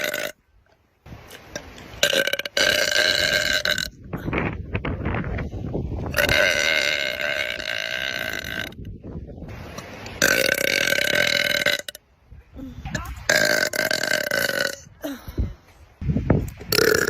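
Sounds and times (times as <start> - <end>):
girl burping: 12.9 - 15.5, 16.7 - 17.0.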